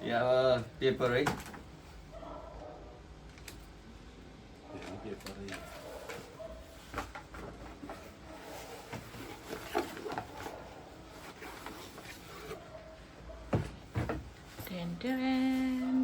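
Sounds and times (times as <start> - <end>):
packaging rustling: 4.8 - 12.8.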